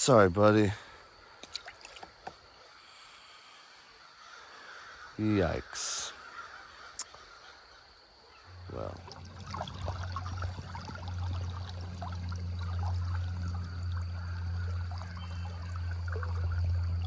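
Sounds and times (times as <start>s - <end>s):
creek water trickling: 0.0s - 5.6s, 6.3s - 17.0s
steady low hum: 8.3s - 17.0s.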